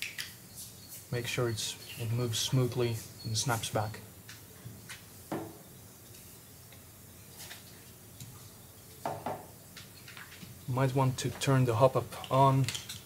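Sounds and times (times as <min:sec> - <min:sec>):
pistol parts clicking: 0:12.2 - 0:13.0.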